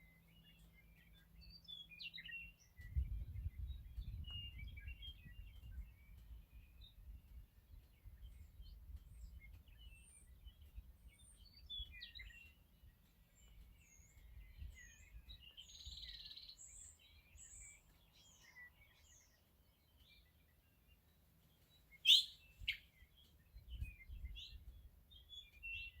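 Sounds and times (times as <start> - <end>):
birds singing and chirping: 0.0 - 26.0
loud sharp bird calls: 21.9 - 23.2.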